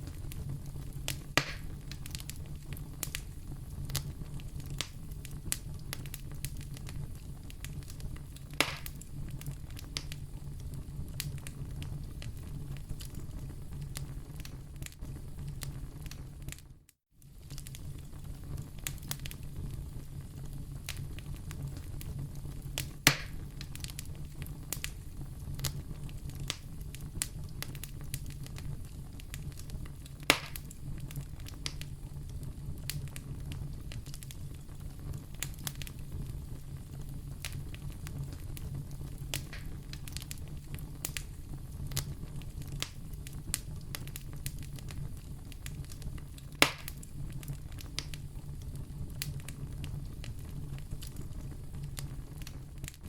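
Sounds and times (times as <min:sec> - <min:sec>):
sharp pops of burning wood: 0:00.0 - 0:03.3, 0:03.9 - 0:10.2, 0:22.8 - 0:36.3, 0:37.0 - 0:48.5
fire crackling: 0:00.0 - 0:53.0
wood fire rumbling: 0:00.0 - 0:53.0.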